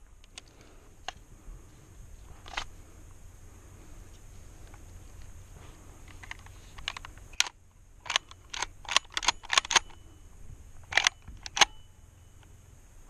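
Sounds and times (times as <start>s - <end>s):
small mechanical clicks and rattles: 6.0s - 10.0s, 10.8s - 11.8s.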